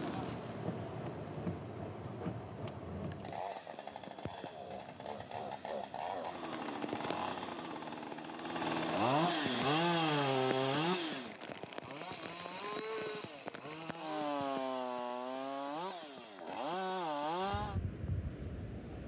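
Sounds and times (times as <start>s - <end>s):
chainsaw engine revving: 3.2s - 17.8s.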